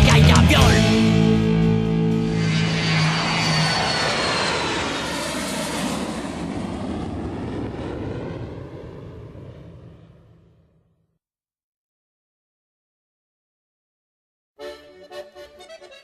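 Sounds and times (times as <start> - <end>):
band chord: 0.0 - 2.8, 14.6 - 16.0
jet airliner passing: 0.2 - 10.8.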